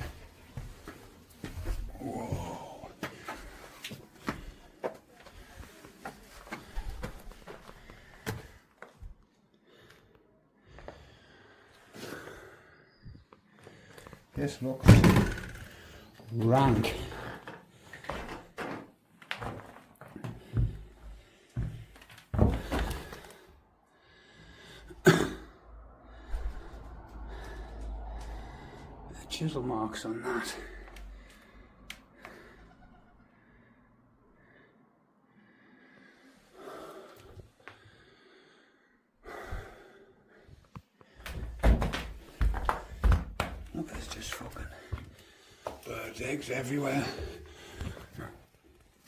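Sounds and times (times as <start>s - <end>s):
man breathing out heavily: 20.4s - 29.2s, 33.4s - 41.6s, 47.2s - 48.7s.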